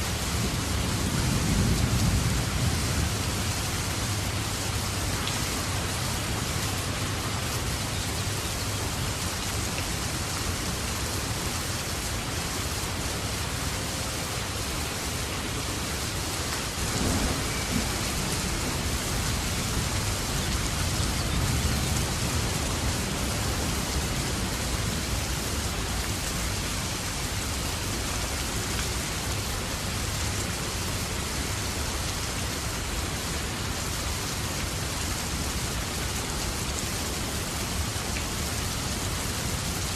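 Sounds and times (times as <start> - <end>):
steady rain falling: 0.0 - 39.9
low rumble of thunder: 0.1 - 4.6, 16.7 - 27.3.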